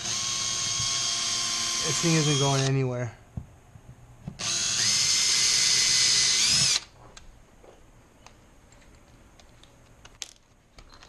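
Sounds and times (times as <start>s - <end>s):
electric drill whining: 0.0s - 2.7s, 4.4s - 6.9s.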